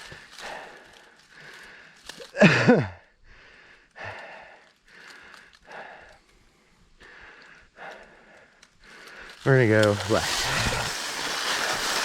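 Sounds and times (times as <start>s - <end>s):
person breathing hard: 0.0s - 9.4s.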